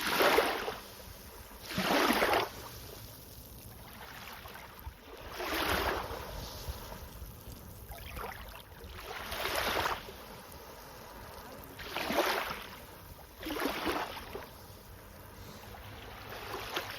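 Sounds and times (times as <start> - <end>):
sea waves washing in: 0.0 - 16.9
low steady rumble: 10.0 - 16.9.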